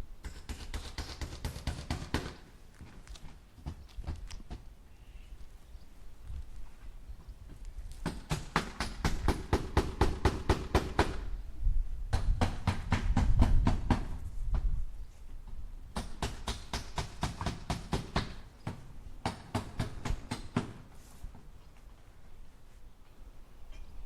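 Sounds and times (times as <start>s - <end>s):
hammer striking nails: 16.0s - 20.8s.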